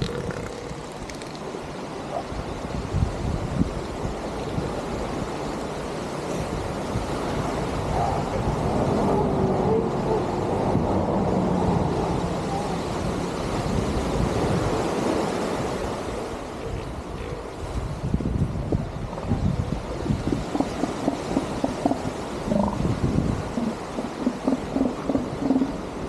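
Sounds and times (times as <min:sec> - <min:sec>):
ocean surf rumbling: 0:00.0 - 0:26.0
wind buffeting microphone: 0:00.0 - 0:26.0
faint wavering calls: 0:23.5 - 0:25.8.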